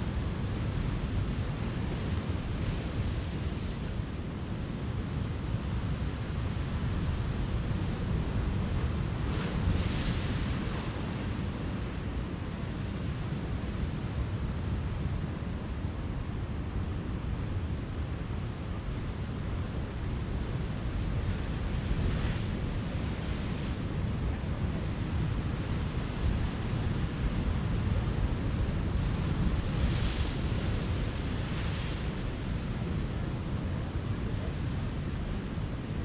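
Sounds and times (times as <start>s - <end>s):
ocean surf rumbling: 21.0s - 36.0s.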